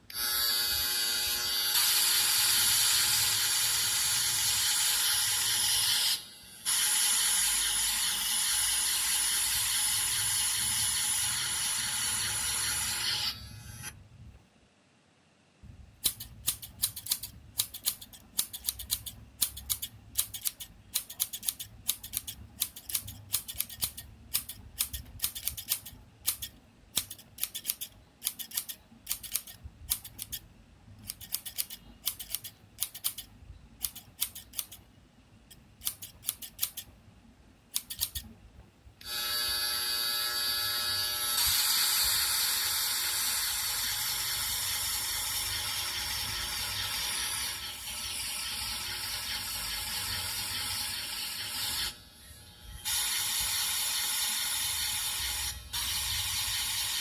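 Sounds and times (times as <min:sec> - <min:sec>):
electric hair clipper whirring: 0:00.1 - 0:02.2, 0:39.0 - 0:42.4
scissors snipping: 0:16.0 - 0:30.4, 0:31.0 - 0:34.8, 0:35.5 - 0:36.9, 0:37.7 - 0:38.3.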